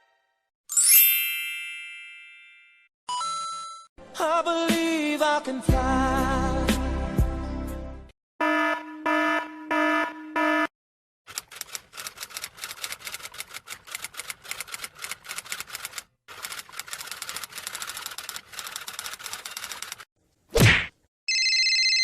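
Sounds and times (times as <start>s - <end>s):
electronic alarm beeps: 8.4s - 10.7s
rapid typing clicks: 11.3s - 20.1s.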